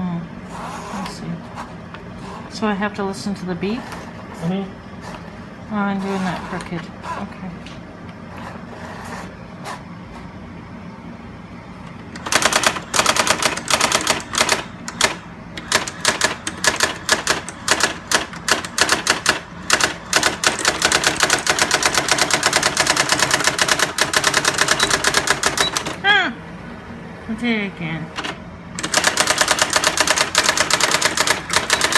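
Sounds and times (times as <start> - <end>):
electronic typewriter printing: 6.0 - 9.8, 12.1 - 26.0, 28.2 - 31.9.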